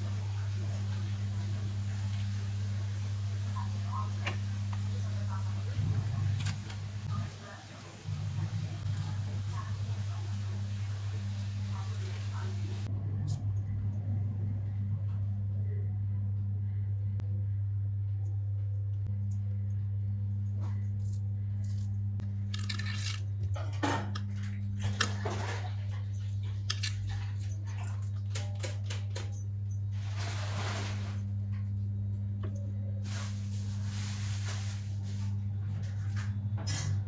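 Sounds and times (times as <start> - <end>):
low electrical hum: 0.0 - 37.0
rustling and scraping of food: 20.4 - 31.8, 33.0 - 36.4
kitchen utensils clinking: 22.5 - 27.6.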